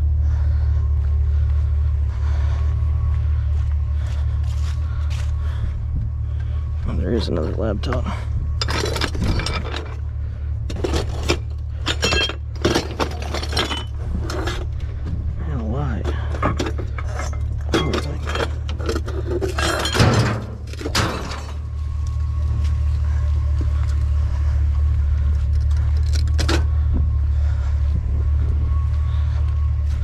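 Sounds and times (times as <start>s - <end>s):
vehicle engine idling: 0.0s - 30.0s
junk clattering and clinking: 7.2s - 22.7s, 25.2s - 27.6s.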